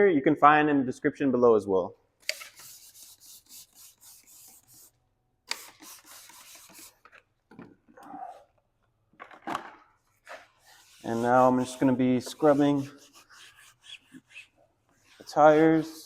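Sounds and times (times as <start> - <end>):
brush scrubbing a tire: 10.6 - 16.0.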